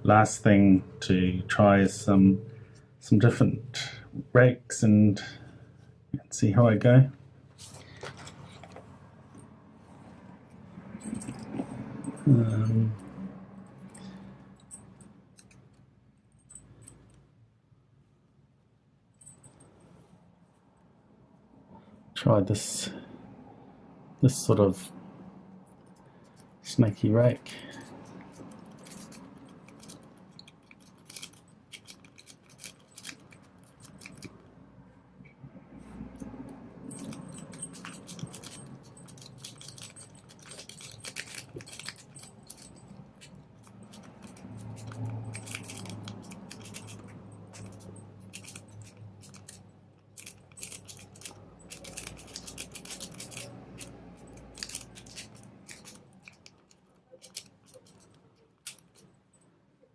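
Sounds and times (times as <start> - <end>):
lock pick scraping in padlock: 27.8 - 34.4, 37.0 - 59.1.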